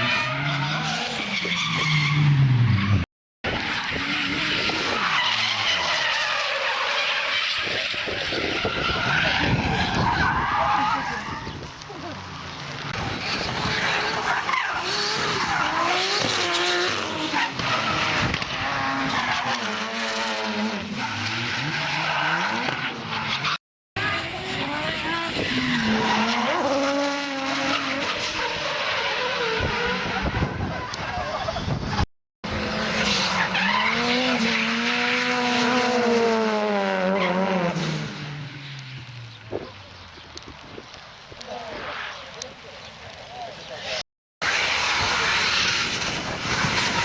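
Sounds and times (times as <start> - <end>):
car engines revving: 0.0 - 47.0
tyres squealing: 8.5 - 12.9.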